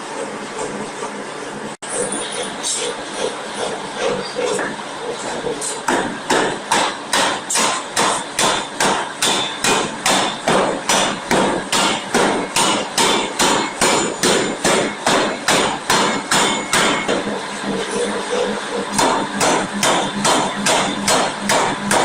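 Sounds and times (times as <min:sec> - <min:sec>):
forging hammer striking metal: 0:05.6 - 0:17.3, 0:18.9 - 0:22.0.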